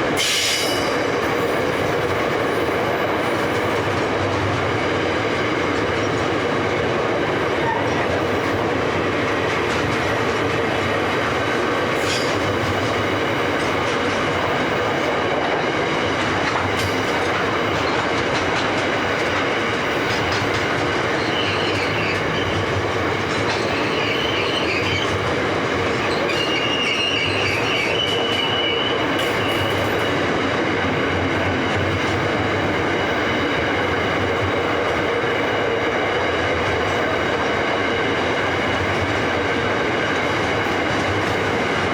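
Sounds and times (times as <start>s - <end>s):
train wheels clicking on rails: 0.0s - 41.9s
wheel squeal: 21.1s - 22.6s, 23.6s - 25.2s, 26.0s - 30.2s.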